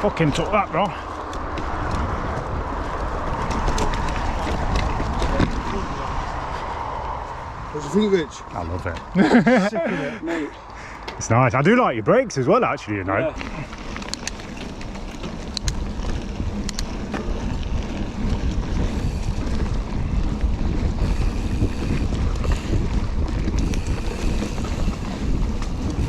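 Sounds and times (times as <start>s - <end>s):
sharp clicks and rattles: 0.0s - 6.4s, 13.4s - 26.0s
tyres rolling over trail: 0.0s - 26.0s
wind buffeting microphone: 0.0s - 26.0s.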